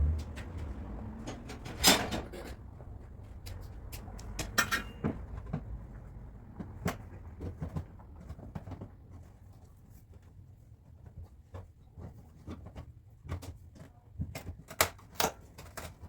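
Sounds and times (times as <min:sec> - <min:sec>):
tools knocking on metal: 0:04.0 - 0:05.3.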